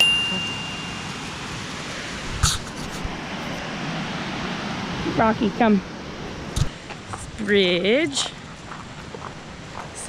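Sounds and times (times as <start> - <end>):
waterfall rushing: 0.0 - 8.0.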